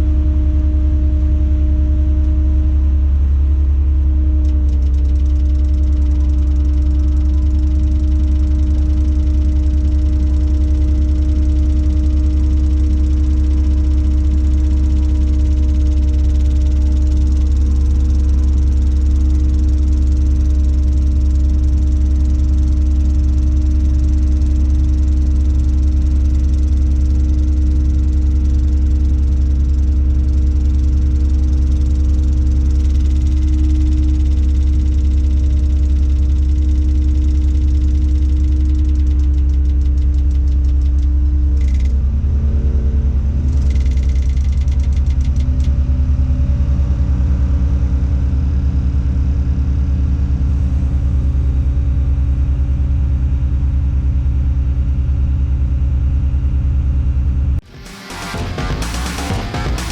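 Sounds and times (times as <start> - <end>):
diesel engine running: 0.0 - 59.9
fast ticking chatter: 4.4 - 41.9, 43.5 - 45.7.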